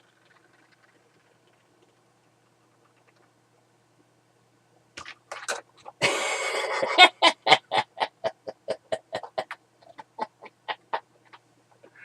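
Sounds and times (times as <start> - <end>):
man laughing: 6.0 - 11.1.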